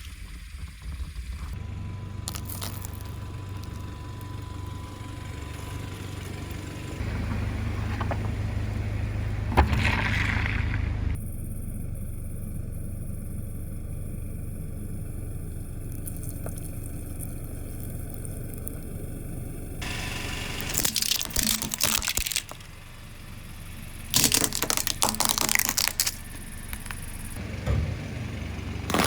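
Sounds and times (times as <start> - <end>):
steady low rumble: 0.6 - 19.9, 22.4 - 29.0
tyre crunching objects: 2.2 - 4.7, 9.5 - 11.2, 20.6 - 22.7, 24.1 - 27.4.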